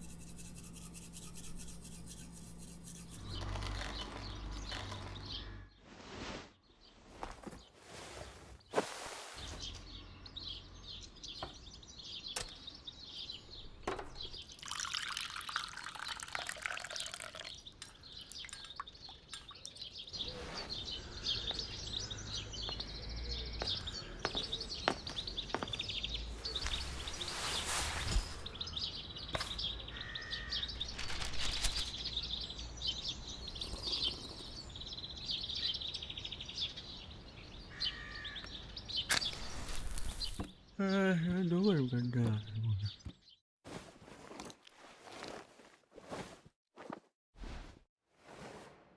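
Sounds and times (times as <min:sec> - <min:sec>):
birds chirping: 0:00.0 - 0:05.9, 0:06.6 - 0:43.4.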